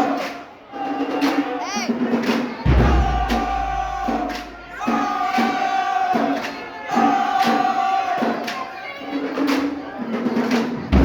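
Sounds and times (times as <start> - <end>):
drum and cymbal strikes: 0.0 - 11.0
deep bass hit: 2.7 - 4.8
brass chords: 2.7 - 5.4.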